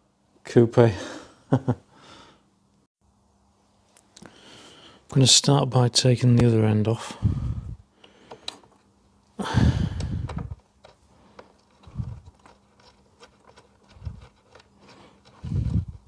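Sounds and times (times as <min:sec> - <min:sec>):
metallic hand tool working noise: 0:10.7 - 0:16.0.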